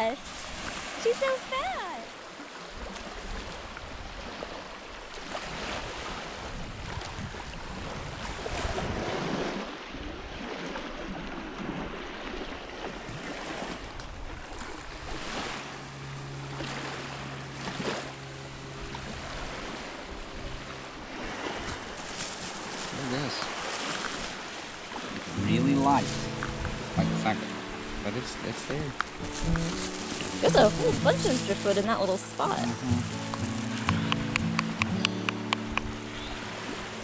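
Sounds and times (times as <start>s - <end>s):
waves washing on shore: 0.0s - 37.0s
wind noise on microphone: 5.3s - 15.5s, 25.2s - 27.0s.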